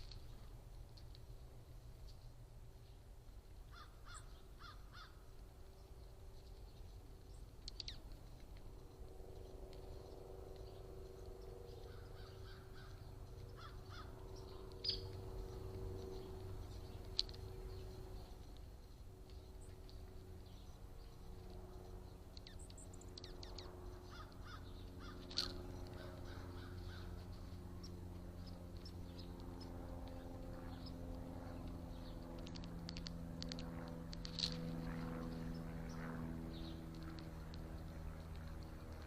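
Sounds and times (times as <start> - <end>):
small bird calls and ticks: 0.0 - 39.0
steady low hum: 0.0 - 39.0
crows cawing: 3.7 - 5.2, 11.8 - 14.2, 24.0 - 27.2.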